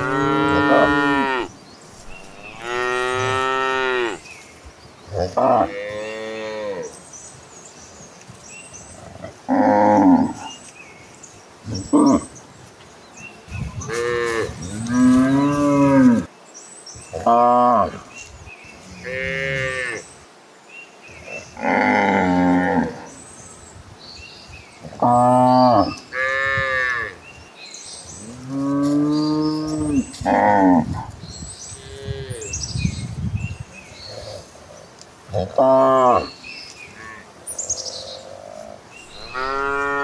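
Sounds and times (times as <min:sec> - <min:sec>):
cattle mooing: 0:00.0 - 0:01.5, 0:02.3 - 0:04.2, 0:39.1 - 0:40.0.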